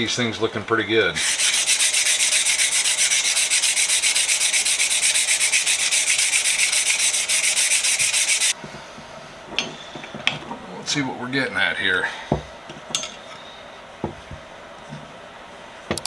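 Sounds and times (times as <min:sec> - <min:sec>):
sandpaper rubbing on wood: 0:01.2 - 0:08.6.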